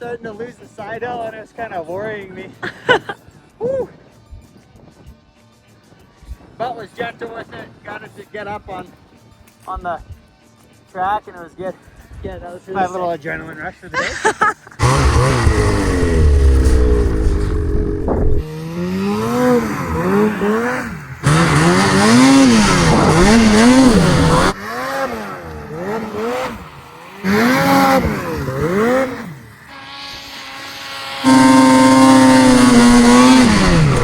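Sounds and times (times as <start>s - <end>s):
snowmobile engine revving: 14.8s - 34.0s.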